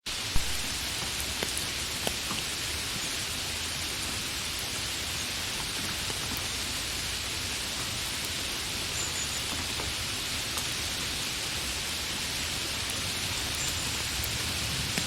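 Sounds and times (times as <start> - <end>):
single loud raindrops: 0.1 - 1.0
steady rain hiss: 0.1 - 15.0.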